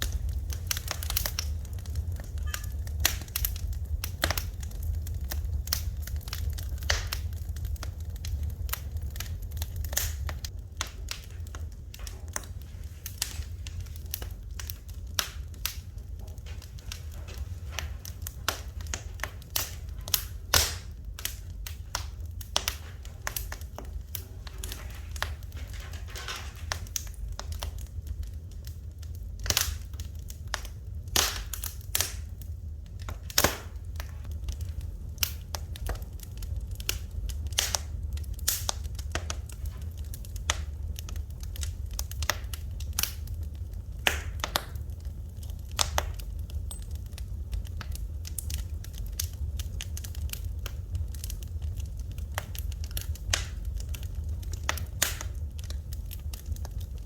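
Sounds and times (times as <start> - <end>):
steady low rumble: 0.0 - 57.0
wood fire crackling and popping: 0.0 - 57.0.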